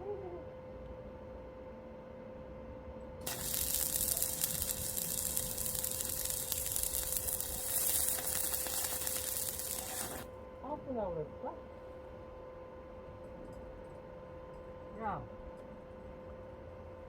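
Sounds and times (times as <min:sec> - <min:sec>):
faint steady hum: 0:02.8 - 0:16.2
welding arc crackling: 0:03.2 - 0:10.3.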